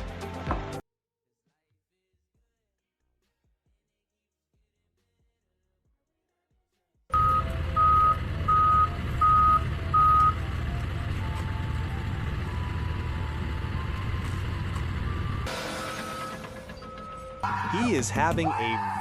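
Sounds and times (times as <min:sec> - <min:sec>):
reversing alarm beeps: 0:07.2 - 0:10.5, 0:12.4 - 0:18.0
diesel engine rumble: 0:07.2 - 0:16.7.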